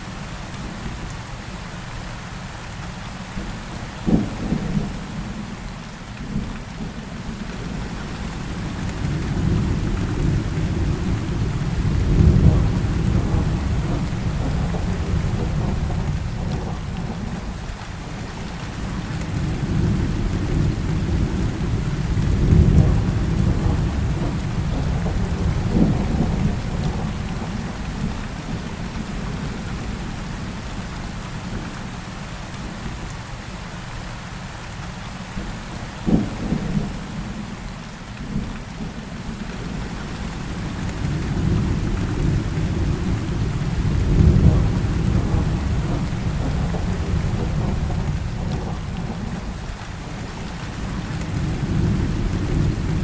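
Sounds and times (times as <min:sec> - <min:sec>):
heavy rain falling: 0:00.0 - 0:53.0
rolling thunder: 0:07.7 - 0:17.6, 0:18.5 - 0:30.0, 0:39.6 - 0:53.0
sharp thunderclap: 0:19.6 - 0:27.6, 0:40.9 - 0:49.6.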